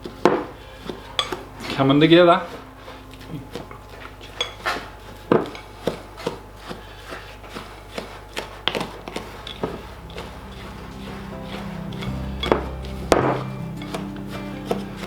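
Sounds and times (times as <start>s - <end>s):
utensil scraping and knocking bowl: 0.0s - 15.0s.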